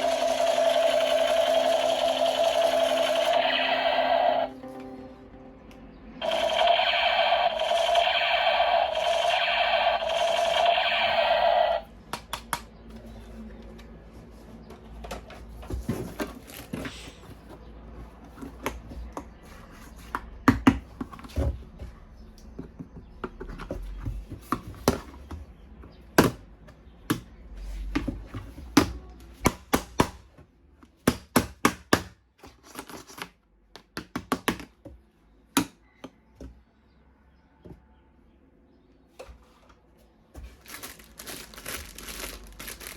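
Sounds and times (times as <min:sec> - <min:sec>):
pulsing electronic tone: 0:00.0 - 0:04.9, 0:06.2 - 0:11.9.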